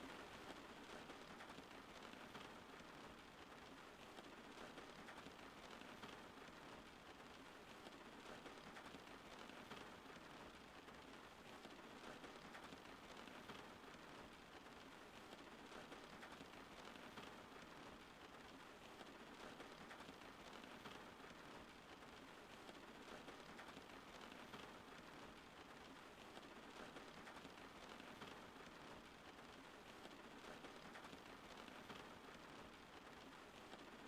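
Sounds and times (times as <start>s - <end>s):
faint steady rain: 0.0s - 34.0s.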